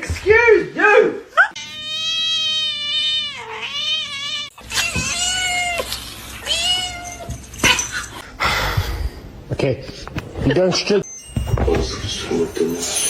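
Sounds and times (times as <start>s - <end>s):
cats meowing: 1.5s - 7.9s.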